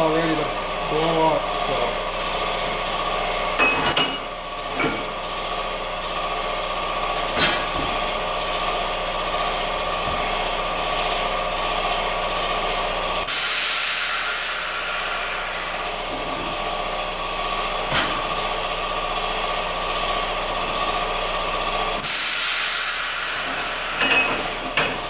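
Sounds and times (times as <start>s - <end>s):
air compressor humming and whining: 0.0s - 25.0s
metal clanks: 3.6s - 5.2s, 7.1s - 8.0s
compressed air hiss: 13.3s - 16.0s, 22.0s - 24.7s.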